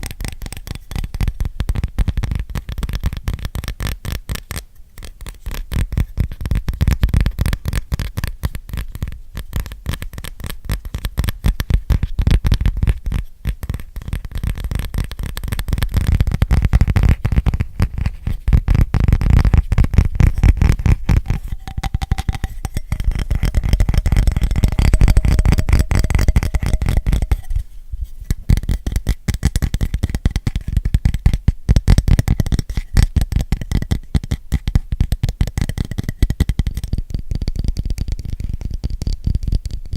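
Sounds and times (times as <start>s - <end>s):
fast finger tapping: 20.3s - 27.6s.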